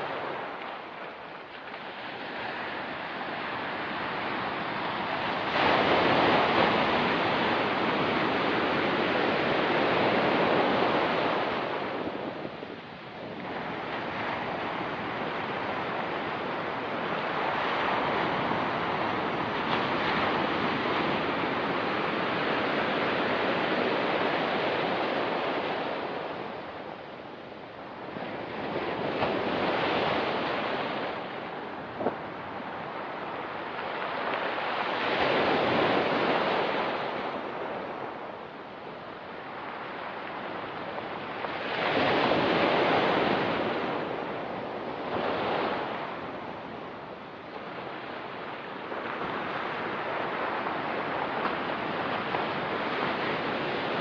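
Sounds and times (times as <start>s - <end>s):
waves on pebble beach: 0.0s - 27.0s.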